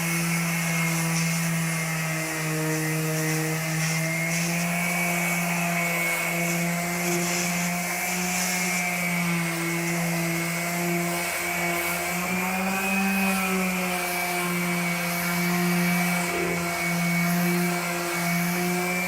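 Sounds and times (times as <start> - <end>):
electric sander on steel: 0.0 - 19.0.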